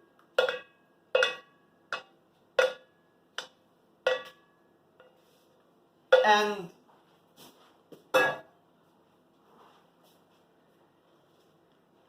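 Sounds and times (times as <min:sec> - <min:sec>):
spoon clinking against a pot: 0:00.2 - 0:05.2.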